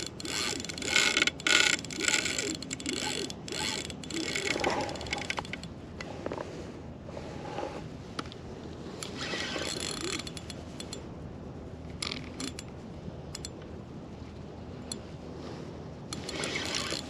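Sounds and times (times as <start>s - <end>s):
fishing reel clicking: 0.0s - 5.7s, 9.0s - 11.0s, 11.9s - 12.7s, 16.1s - 17.0s.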